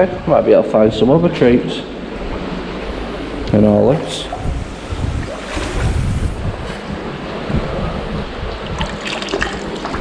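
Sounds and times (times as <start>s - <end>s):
wind gusting on microphone: 4.2s - 10.0s.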